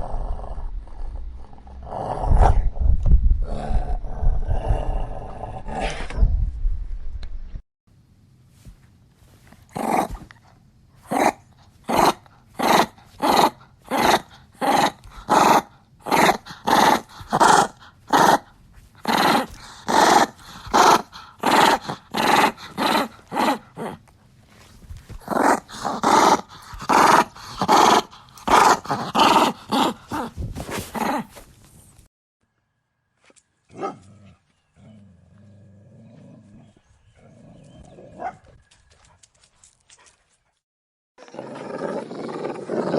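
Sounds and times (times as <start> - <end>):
dog barking and growling: 9.7 - 24.0, 25.0 - 31.4, 33.7 - 38.6.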